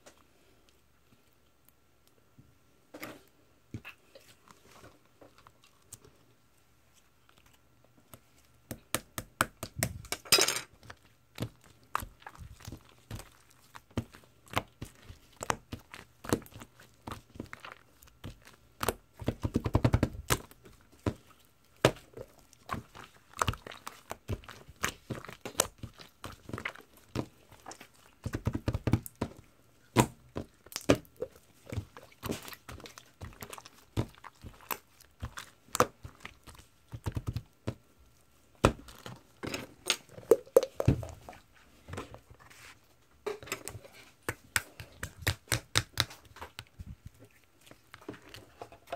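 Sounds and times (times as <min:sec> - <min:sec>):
slime crackling: 0:10.8 - 0:37.8.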